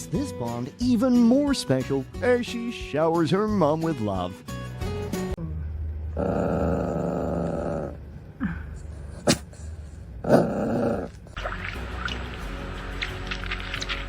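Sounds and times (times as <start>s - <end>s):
animal growling: 6.1s - 8.1s, 10.2s - 11.4s.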